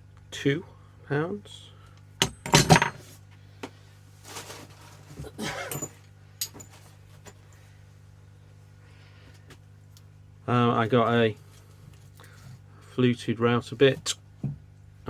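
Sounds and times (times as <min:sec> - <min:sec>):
metal tool clunk: 0:02.2 - 0:03.1.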